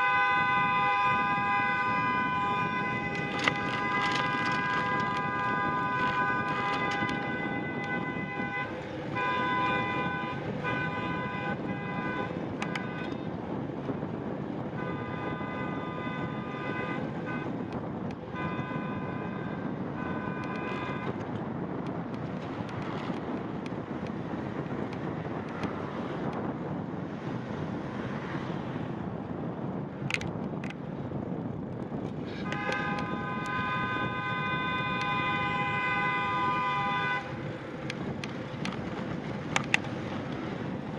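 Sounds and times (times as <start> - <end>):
car horn blasts: 0.0 - 13.3, 14.6 - 21.7, 32.3 - 37.5
wind noise on microphone: 0.0 - 40.9.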